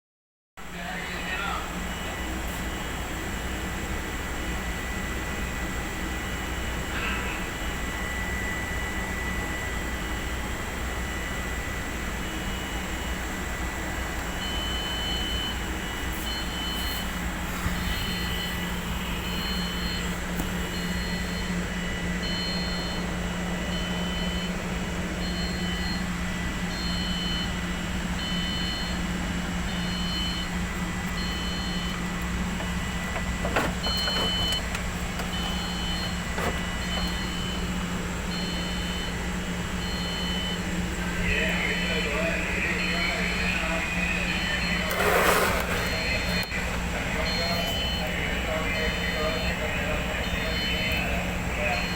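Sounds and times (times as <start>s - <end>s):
machine humming and whining: 0.6s - 51.9s
high electronic beeping: 35.3s - 39.2s.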